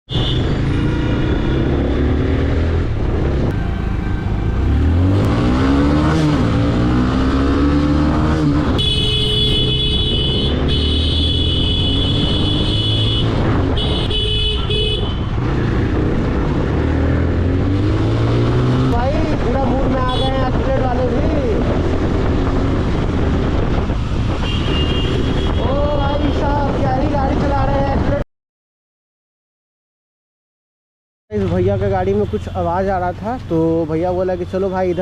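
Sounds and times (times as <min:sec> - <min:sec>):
motorcycle engines revving: 0:00.1 - 0:28.1.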